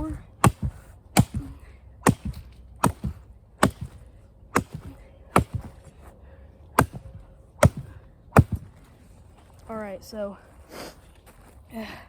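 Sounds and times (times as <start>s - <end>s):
blade chopping into wood: 0.0s - 5.8s, 6.8s - 8.7s.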